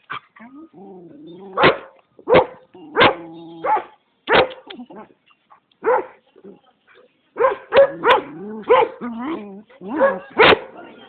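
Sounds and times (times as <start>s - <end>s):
dog barking: 1.6s - 4.6s, 5.8s - 6.2s, 7.4s - 9.0s, 9.9s - 10.8s.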